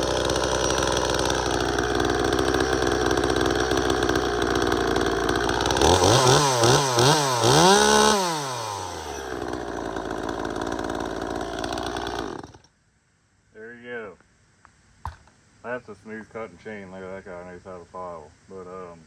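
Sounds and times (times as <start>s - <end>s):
chainsaw revving and idling: 0.0s - 12.7s.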